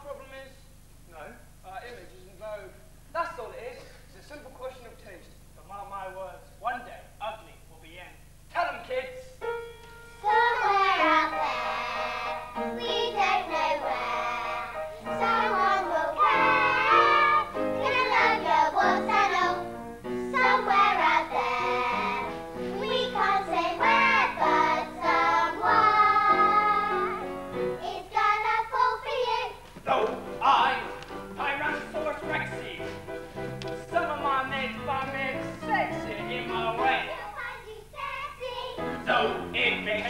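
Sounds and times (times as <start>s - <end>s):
instrumental accompaniment: 9.4s - 28.3s, 29.9s - 37.1s.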